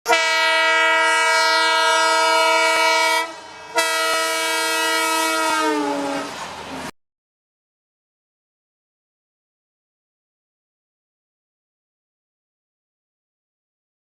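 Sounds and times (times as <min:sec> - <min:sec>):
locomotive horn blasts: 0:00.0 - 0:06.4.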